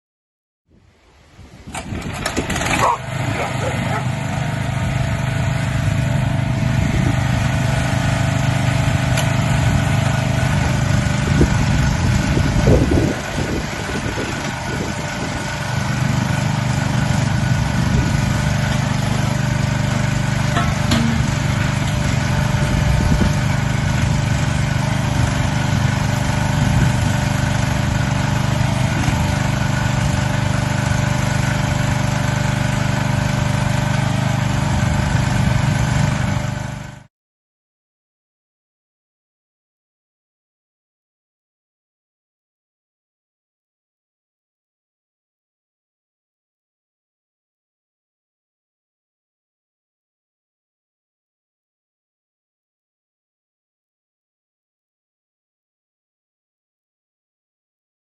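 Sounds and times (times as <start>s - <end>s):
engine running steadily: 1.0s - 37.1s.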